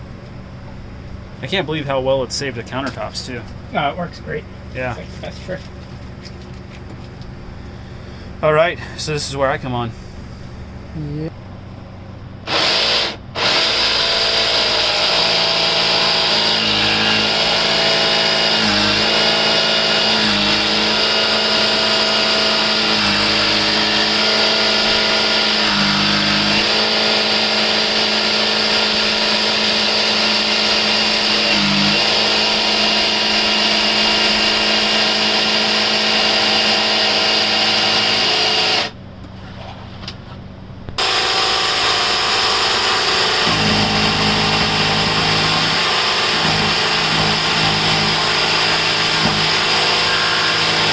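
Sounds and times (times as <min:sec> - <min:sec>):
power tool cutting: 0:12.5 - 0:38.9, 0:41.0 - 0:50.9.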